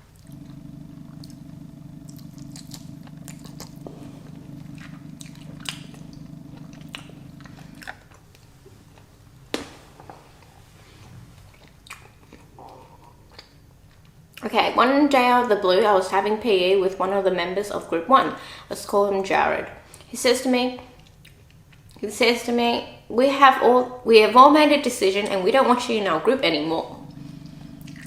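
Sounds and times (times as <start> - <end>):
chewing and biting on rib: 0.0 - 8.5, 27.0 - 28.0
steady low hum: 0.0 - 9.5, 25.0 - 28.0.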